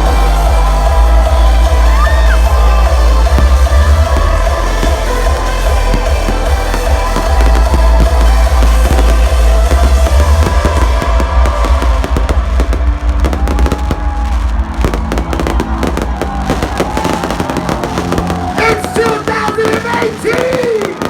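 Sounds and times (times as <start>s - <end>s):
electronic dance music: 0.0s - 21.0s
fireworks banging and crackling: 1.7s - 21.0s.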